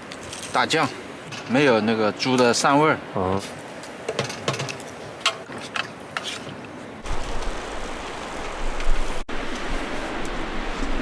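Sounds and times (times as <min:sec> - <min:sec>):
wind buffeting microphone: 0:07.0 - 0:11.0.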